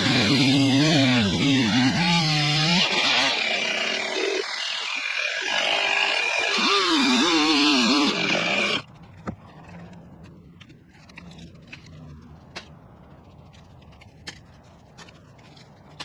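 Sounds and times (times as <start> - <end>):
chainsaw cutting wood: 0.0 - 8.9.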